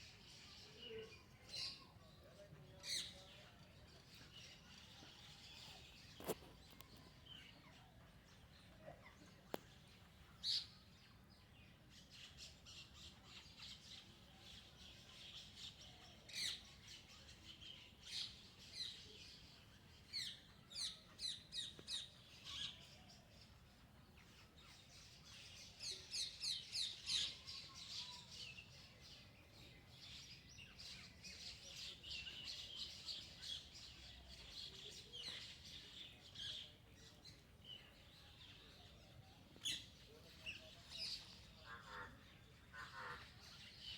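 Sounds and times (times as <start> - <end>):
background birdsong chorus: 0.0 - 43.9
birds chirping and calling: 30.6 - 43.9.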